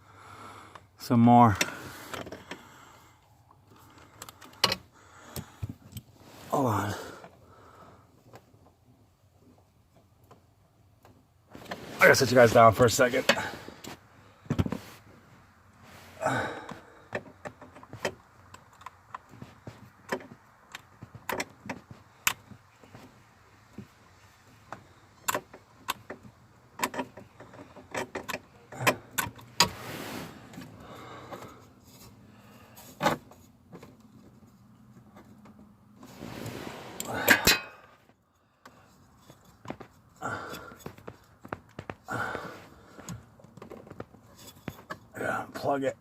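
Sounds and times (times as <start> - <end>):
rustling scrapes: 6.2 - 6.6, 11.5 - 14.0, 14.7 - 16.2, 29.7 - 30.8, 36.0 - 37.1.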